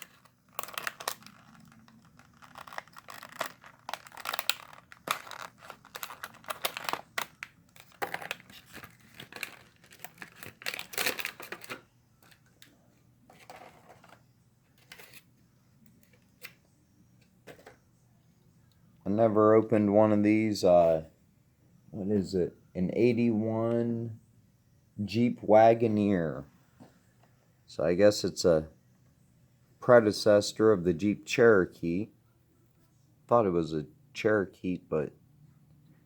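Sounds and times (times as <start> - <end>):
card tearing: 0.0 - 11.8
plastic packaging crinkling: 0.0 - 12.4.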